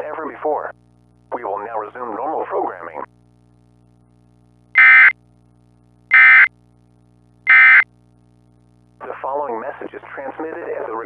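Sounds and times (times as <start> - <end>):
faint low hum: 0.0 - 11.0
electronic data bursts: 4.8 - 5.2, 6.1 - 6.5, 7.5 - 7.9.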